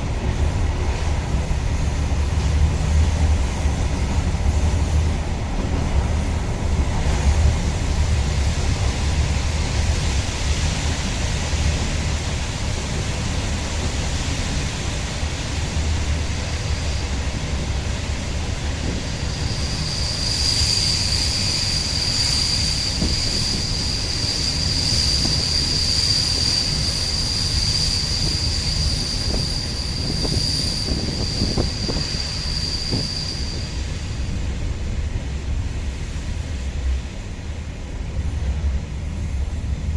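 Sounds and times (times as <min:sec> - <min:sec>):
train rumbling on rails: 0:00.0 - 0:39.9
high-pitched wheel squeal: 0:19.1 - 0:34.3.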